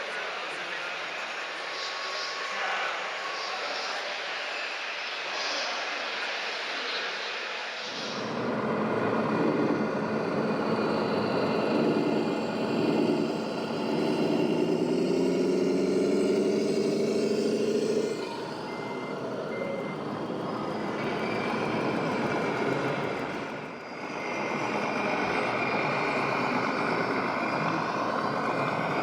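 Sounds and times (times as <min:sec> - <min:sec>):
simulated diesel engine sound: 0:07.9 - 0:29.0
short reversing beeps: 0:17.4 - 0:23.2.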